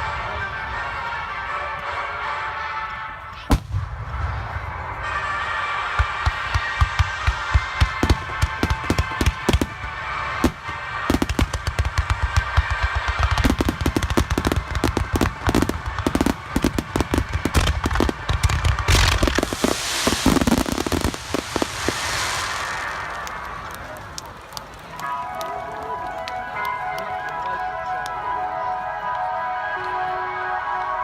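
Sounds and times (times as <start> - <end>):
fireworks bangs and booms: 3.5 - 24.5
fireworks hissing crackle: 5.0 - 25.7.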